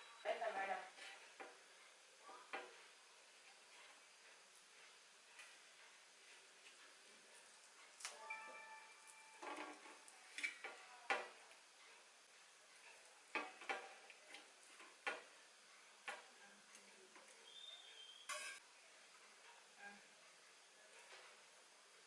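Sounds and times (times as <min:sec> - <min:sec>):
brief steady tone: 0:08.2 - 0:09.4.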